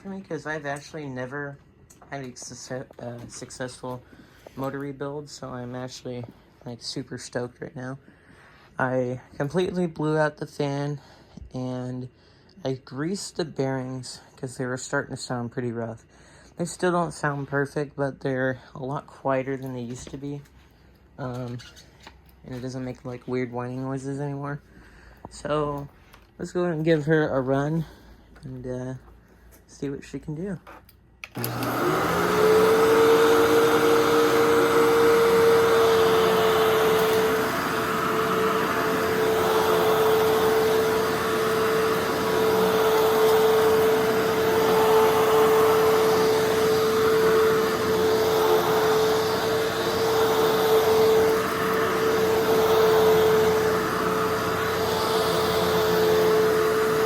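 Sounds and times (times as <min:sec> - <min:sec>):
vacuum cleaner motor whine: 0:31.2 - 0:57.0.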